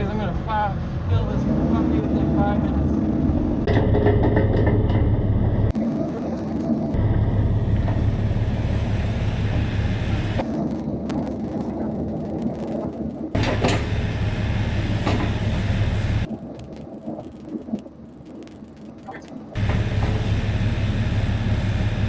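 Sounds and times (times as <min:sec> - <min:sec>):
excavator diesel engine rumbling: 0:00.0 - 0:10.5, 0:13.3 - 0:16.3, 0:19.6 - 0:22.0
knocks: 0:03.7 - 0:05.2.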